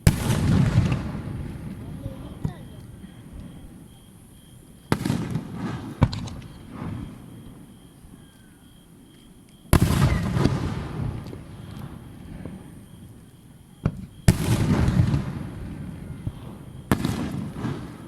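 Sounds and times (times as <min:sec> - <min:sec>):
fireworks shells bursting: 0:04.8 - 0:07.3.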